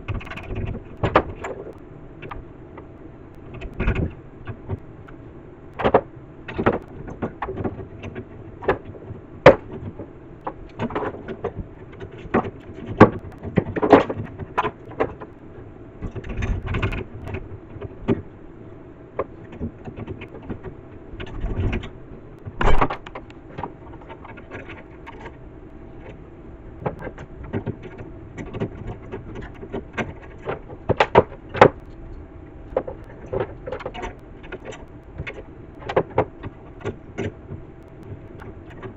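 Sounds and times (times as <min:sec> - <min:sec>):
faint steady hum: 0:00.0 - 0:38.9.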